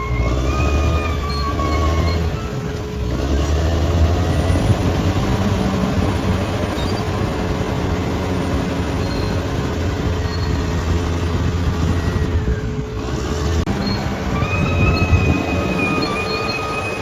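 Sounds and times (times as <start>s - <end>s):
high squeal: 0.0s - 3.1s, 6.6s - 7.2s, 7.8s - 11.0s, 13.7s - 17.0s
bulldozer diesel engine running: 0.0s - 17.0s.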